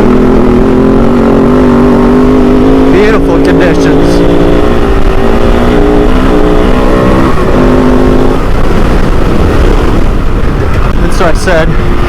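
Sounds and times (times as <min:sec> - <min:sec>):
motorcycle engine running: 0:00.0 - 0:12.0
wind rumble on microphone: 0:00.0 - 0:12.0.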